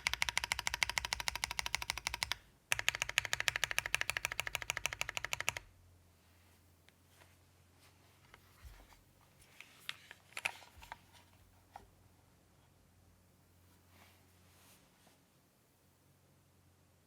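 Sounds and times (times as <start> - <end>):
fast typing on mechanical keyboard: 0.0 - 5.7.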